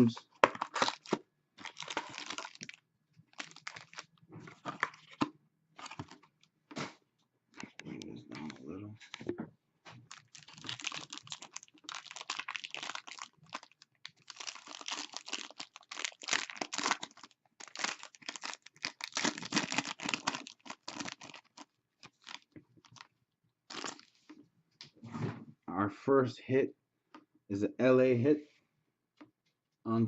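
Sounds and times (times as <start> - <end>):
wrapper crinkling: 0.0 - 5.2, 5.8 - 6.4, 10.0 - 23.1, 23.7 - 24.3.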